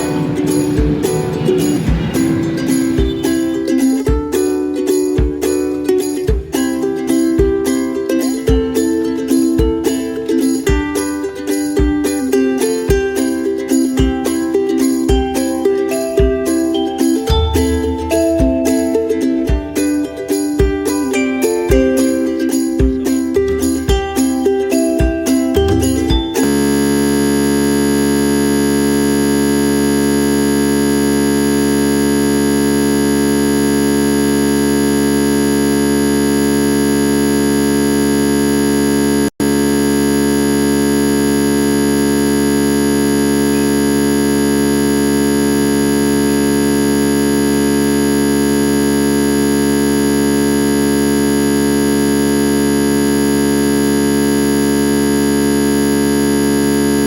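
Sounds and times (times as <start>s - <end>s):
electronic buzzing drone: 0.0s - 3.8s, 17.0s - 18.9s, 25.5s - 57.0s.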